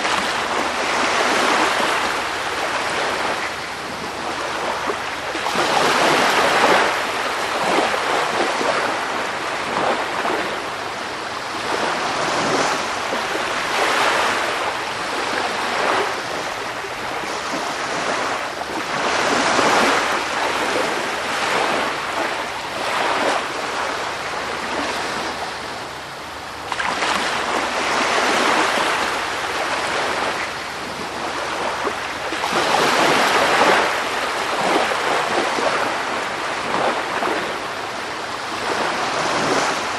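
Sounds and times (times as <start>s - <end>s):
sea waves washing onto shore: 0.0s - 39.9s.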